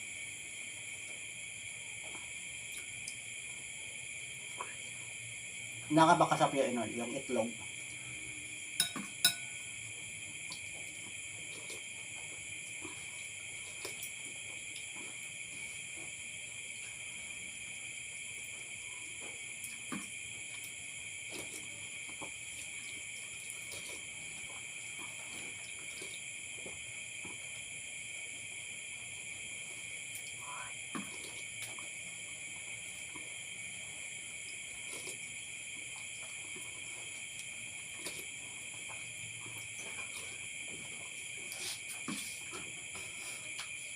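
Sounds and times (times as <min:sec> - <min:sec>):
crickets chirping: 0:00.0 - 0:43.9
spoon clinking on bowl: 0:08.8 - 0:09.6.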